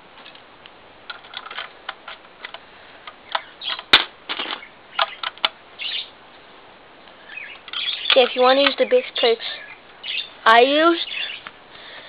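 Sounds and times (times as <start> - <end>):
plastic toy bricks clicking: 1.1 - 5.6.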